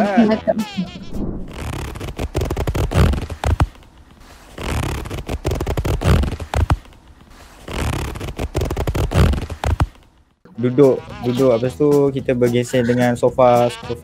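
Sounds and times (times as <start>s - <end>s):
clothing zipper being pulled: 1.0s - 10.1s.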